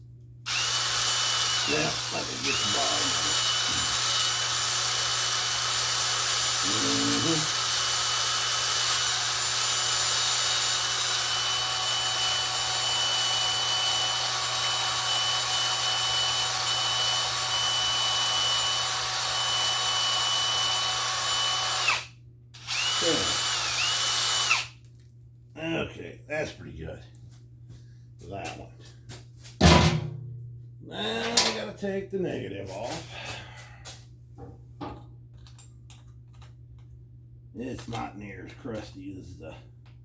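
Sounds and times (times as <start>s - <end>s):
electric drill scrubbing metal: 0.5s - 24.7s.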